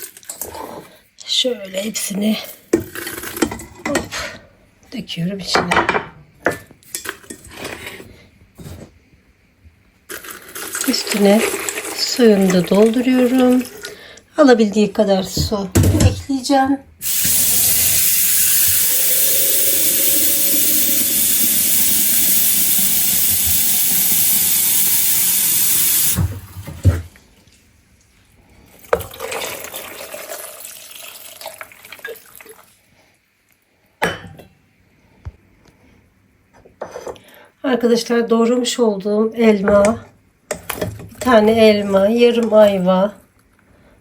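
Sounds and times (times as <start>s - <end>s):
water pouring into a pot: 10.1s - 14.0s, 17.0s - 26.4s, 28.8s - 32.8s.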